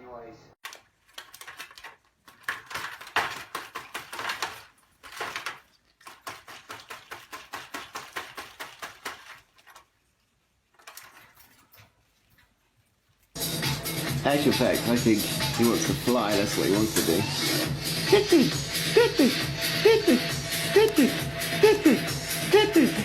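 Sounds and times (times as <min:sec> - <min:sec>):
parrot wings flapping: 0:00.6 - 0:10.0.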